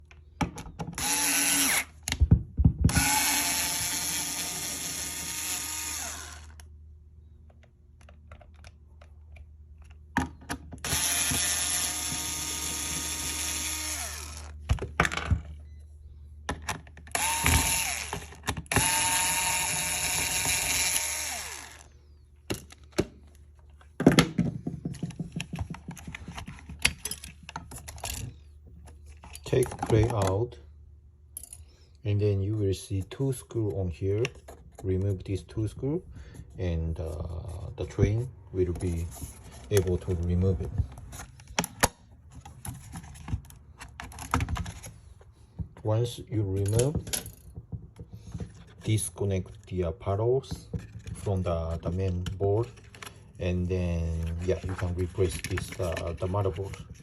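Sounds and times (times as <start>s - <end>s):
cordless screwdriver running: 1.0s - 2.0s, 2.9s - 6.6s, 10.8s - 14.6s, 17.1s - 21.9s.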